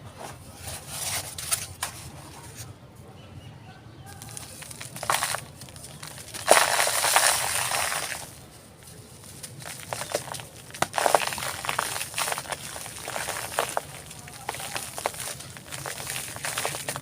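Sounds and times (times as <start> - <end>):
dry solid crunching and crumbling: 3.9 - 17.0.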